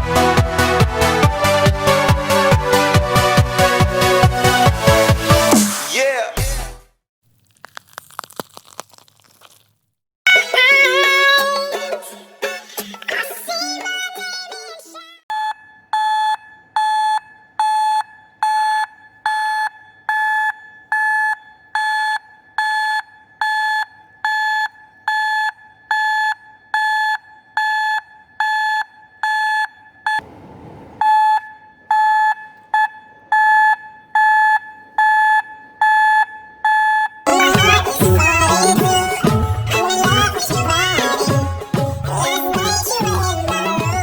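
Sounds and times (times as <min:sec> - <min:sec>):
reversing alarm beeps: 0:15.3 - 0:30.2, 0:31.0 - 0:37.2.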